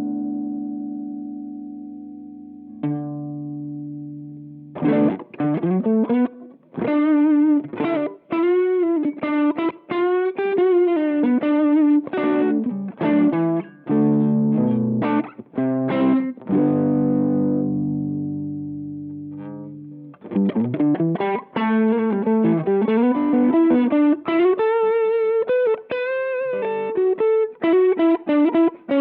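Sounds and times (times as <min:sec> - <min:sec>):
overdriven electric guitar: 0:00.0 - 0:29.0.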